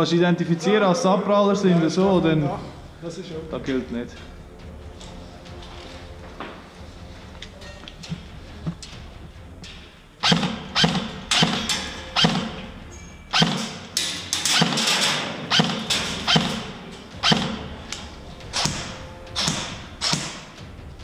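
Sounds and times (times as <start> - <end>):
heavy footsteps with gritty scrape: 3.6 - 10.0, 15.8 - 21.0.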